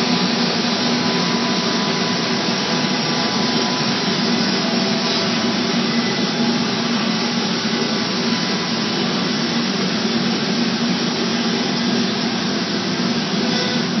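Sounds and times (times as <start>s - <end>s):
router machine whirring: 0.0s - 14.0s.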